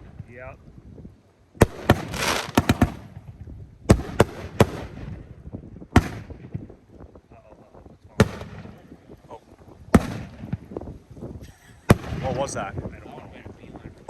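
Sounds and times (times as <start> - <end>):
firework bangs with crackle: 1.6 - 5.3, 5.9 - 6.7, 8.2 - 8.8, 9.9 - 10.9, 11.9 - 12.5.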